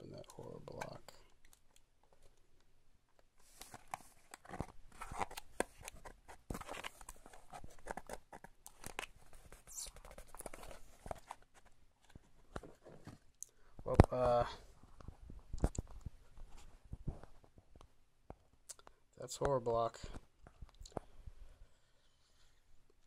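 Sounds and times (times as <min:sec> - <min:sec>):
paper and cardboard rustling: 0:03.4 - 0:13.3.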